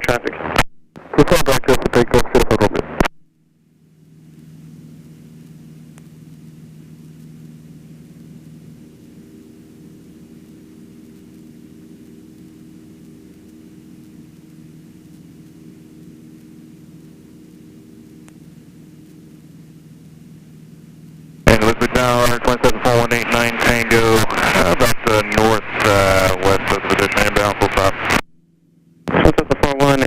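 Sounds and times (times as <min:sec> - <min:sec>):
faint aircraft engine hum: 0:00.0 - 0:30.0.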